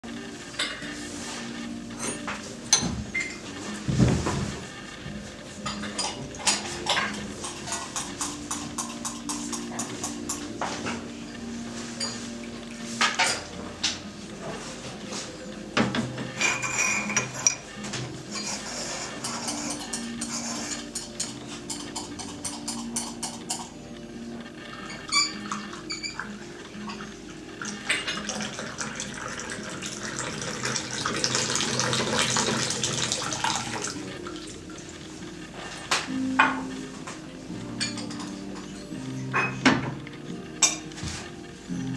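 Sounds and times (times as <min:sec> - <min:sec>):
clay teapot ringing: 0:05.5 - 0:14.0, 0:15.1 - 0:24.0, 0:24.7 - 0:35.0
water pouring: 0:28.0 - 0:34.5.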